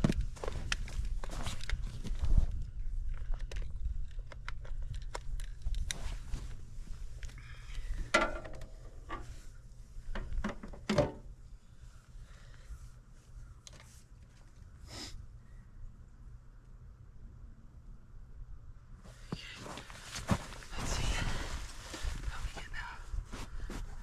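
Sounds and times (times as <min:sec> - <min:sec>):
handling clatter and knocks: 0:08.0 - 0:09.4, 0:10.1 - 0:11.3
footsteps crunching: 0:19.4 - 0:22.6.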